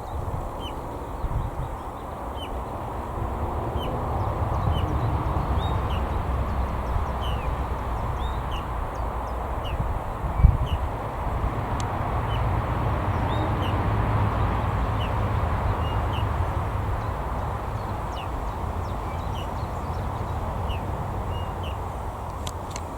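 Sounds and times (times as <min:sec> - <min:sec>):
low wind rumble: 0:00.0 - 0:22.9
small bird calling: 0:03.7 - 0:10.9, 0:14.8 - 0:21.9.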